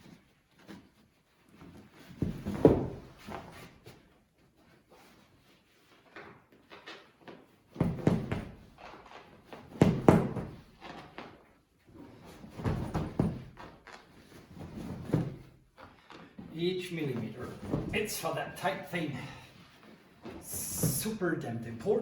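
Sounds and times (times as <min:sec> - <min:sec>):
fabric rustling: 0:08.5 - 0:16.5.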